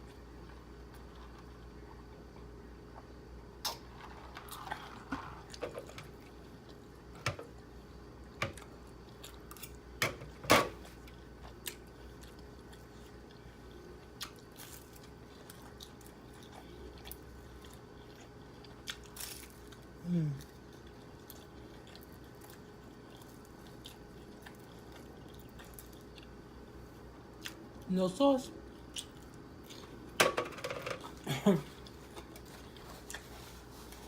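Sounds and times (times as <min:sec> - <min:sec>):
person chewing and biting food: 0:11.0 - 0:26.4, 0:28.7 - 0:30.1, 0:31.7 - 0:34.0.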